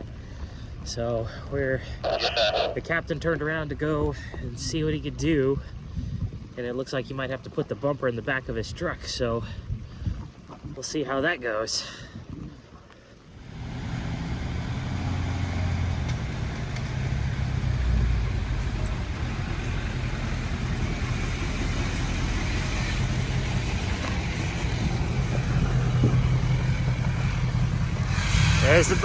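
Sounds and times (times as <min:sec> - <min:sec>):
truck engine running: 0:13.4 - 0:29.0.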